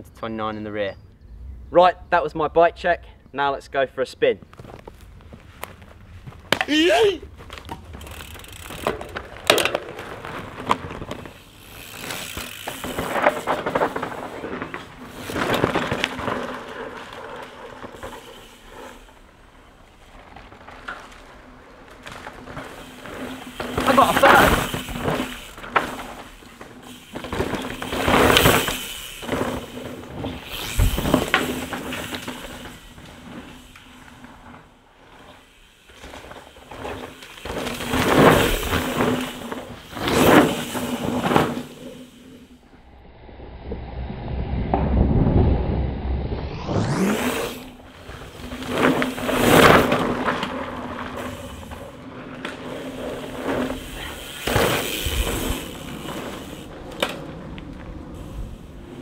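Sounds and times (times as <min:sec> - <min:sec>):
bike tyres on dirt: 0:00.0 - 0:43.0, 0:43.7 - 0:59.0
bicycle freewheel buzzing: 0:07.8 - 0:14.0, 0:17.9 - 0:19.4, 0:22.0 - 0:34.2, 0:35.2 - 0:42.6, 0:46.9 - 0:59.0
wind noise: 0:30.1 - 0:32.2, 0:42.6 - 0:47.9.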